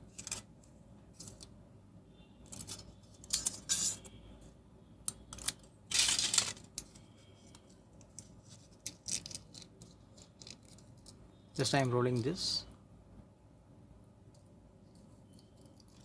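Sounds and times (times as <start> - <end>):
aluminium foil crinkling: 5.4 - 7.0, 8.4 - 11.2.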